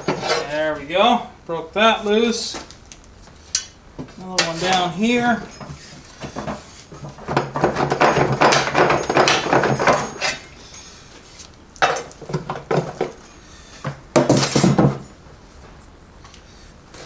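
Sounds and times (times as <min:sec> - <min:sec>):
metal tools clinking on steel: 0:00.0 - 0:00.9, 0:03.4 - 0:13.4.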